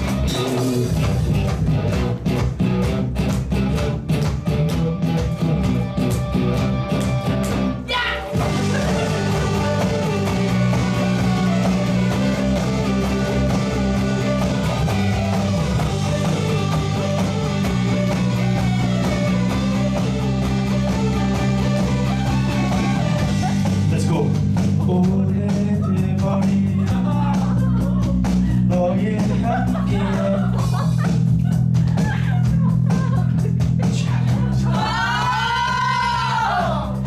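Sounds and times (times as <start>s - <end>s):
chopped guitar strums: 0.0s - 27.1s
live rock band playing: 0.0s - 35.3s.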